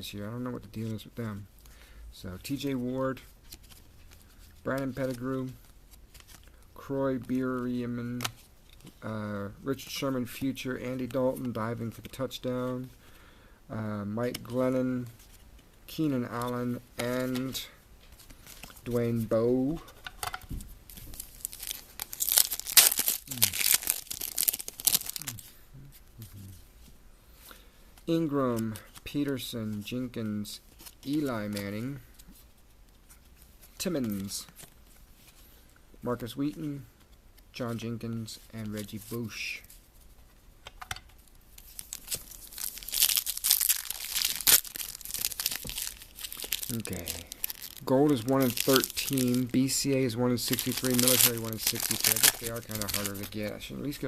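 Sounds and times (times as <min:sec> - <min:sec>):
wrapper tearing and crinkling: 0:20.9 - 0:25.5, 0:41.5 - 0:53.5.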